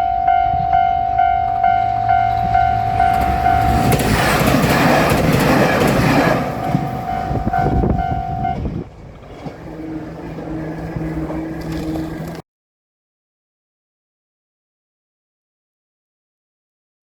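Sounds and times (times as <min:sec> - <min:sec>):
level-crossing bell ringing: 0:00.0 - 0:04.4, 0:06.1 - 0:08.6
railcar rumbling: 0:00.0 - 0:12.4.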